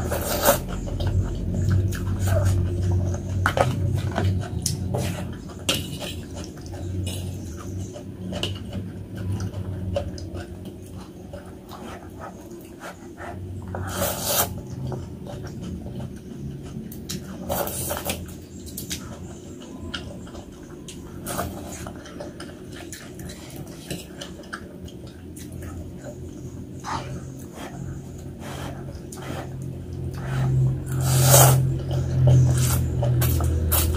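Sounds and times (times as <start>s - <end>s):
steady low hum: 0.0s - 33.9s
wet chewing clicks: 14.5s - 33.9s.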